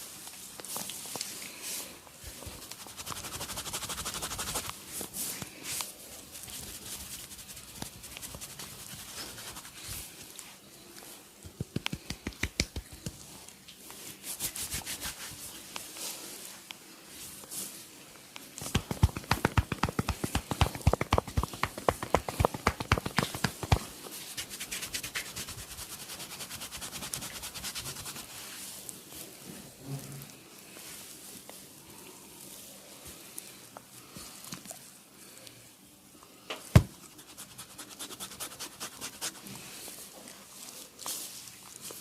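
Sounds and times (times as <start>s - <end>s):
hands rubbing skin and hair: 2.4s - 10.3s, 11.4s - 13.4s, 14.1s - 15.6s, 18.6s - 28.6s, 37.1s - 39.6s
rhythmic hand slaps: 11.6s - 13.2s, 18.6s - 25.4s.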